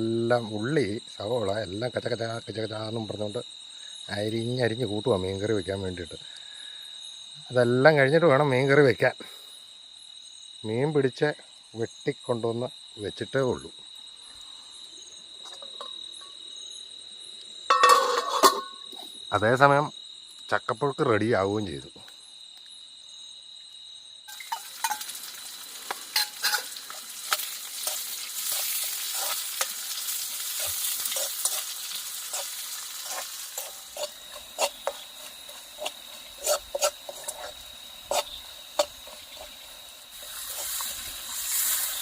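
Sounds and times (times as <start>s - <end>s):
high insect trill: 0.0s - 42.0s
food sizzling in a pan: 17.6s - 19.0s, 24.3s - 42.0s
spoon scraping a pot: 17.7s - 19.0s, 24.3s - 25.1s, 26.2s - 29.9s, 30.5s - 42.0s.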